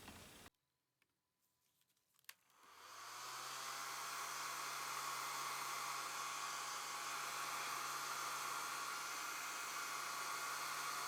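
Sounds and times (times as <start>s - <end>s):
hot-air blower fan hissing: 2.8s - 11.0s.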